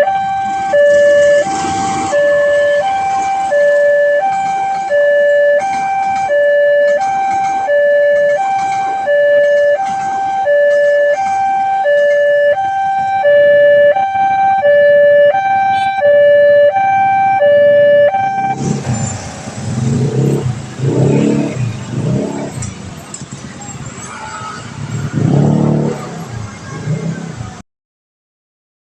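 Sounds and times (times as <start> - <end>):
two-tone crossing warning siren: 0.0 - 22.7
vehicle engines and traffic: 0.0 - 27.6.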